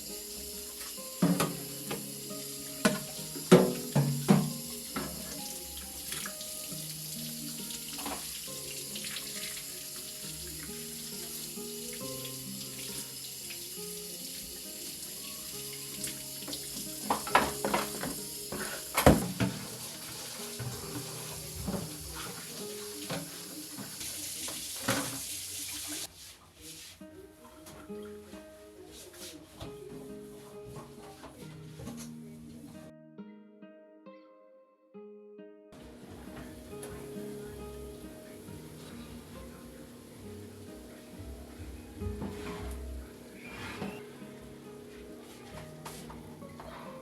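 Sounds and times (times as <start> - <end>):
tap water running into sink: 0.0 - 26.1.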